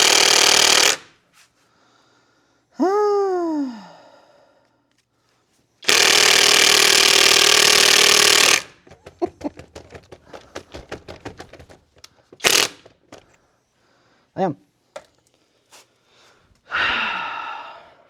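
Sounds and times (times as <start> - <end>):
impact wrench hammering: 0.0 - 1.1, 5.8 - 13.4.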